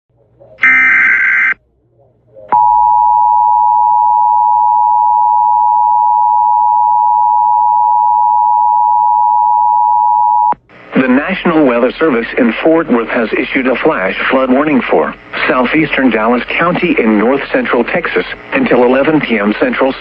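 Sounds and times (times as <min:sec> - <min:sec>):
two-tone attention signal: 0:00.6 - 0:01.6.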